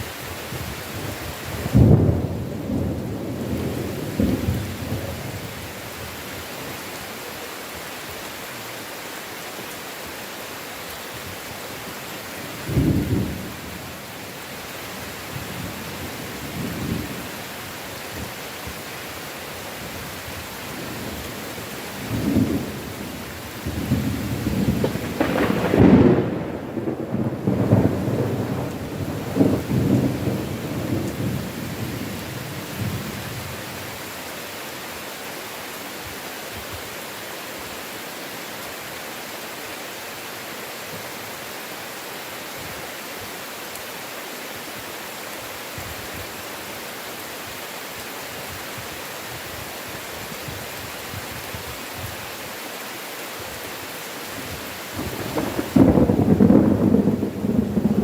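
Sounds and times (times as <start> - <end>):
heavy rain hissing: 0.0 - 58.0
thunder rolling: 23.6 - 31.4, 55.0 - 58.0.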